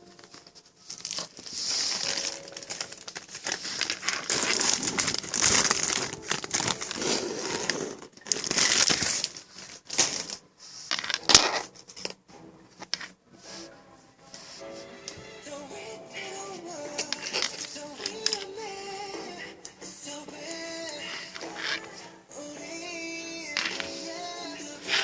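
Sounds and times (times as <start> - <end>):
material crinkling and crumpling: 0.0 - 12.2, 17.0 - 18.6, 21.1 - 22.1.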